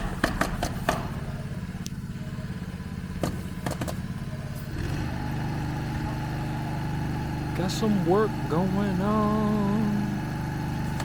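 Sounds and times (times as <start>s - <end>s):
engine running with low pulse: 0.0s - 11.0s.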